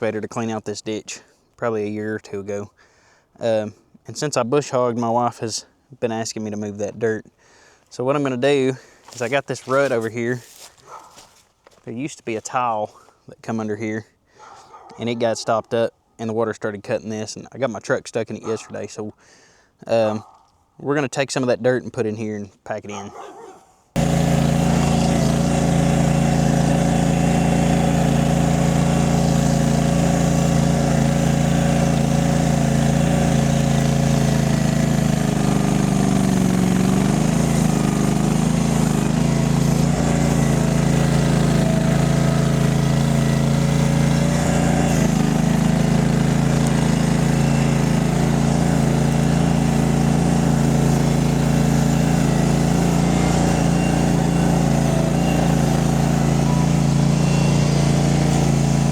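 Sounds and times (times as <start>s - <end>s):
skid steer engine running: 24.0s - 58.9s.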